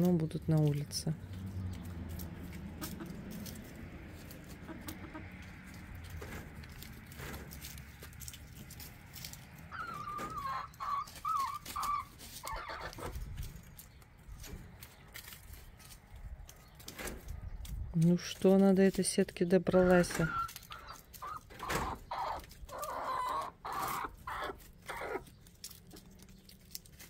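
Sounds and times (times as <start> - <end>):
hens clucking: 0.0 - 17.4, 18.4 - 26.8.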